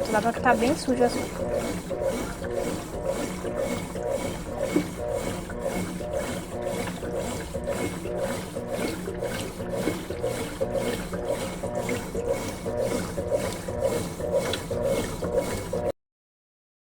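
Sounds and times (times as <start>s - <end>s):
washing machine agitator swishing: 0.0s - 16.0s.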